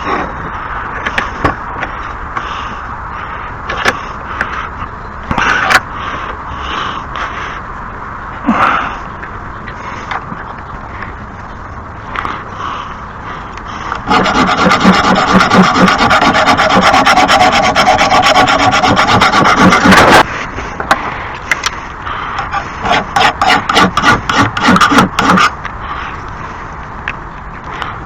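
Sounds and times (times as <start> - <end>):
file rasping on steel blade: 14.1 - 20.3, 22.4 - 25.6.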